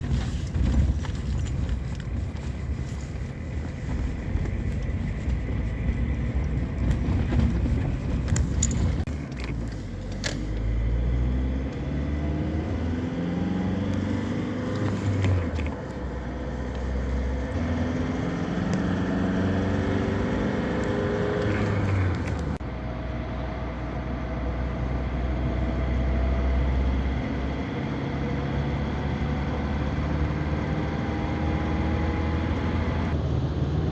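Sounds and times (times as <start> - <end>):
diesel engine accelerating: 0.0 - 33.9
sharp clicks and rattles: 0.2 - 10.7.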